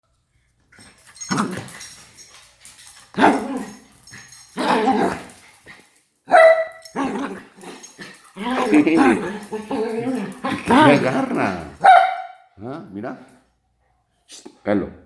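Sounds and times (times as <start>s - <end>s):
dog barking: 6.3s - 6.8s, 11.8s - 12.5s.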